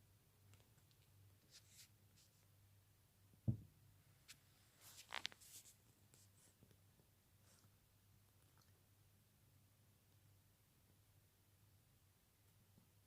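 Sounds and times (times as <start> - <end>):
soft low thump: 3.4 - 3.7.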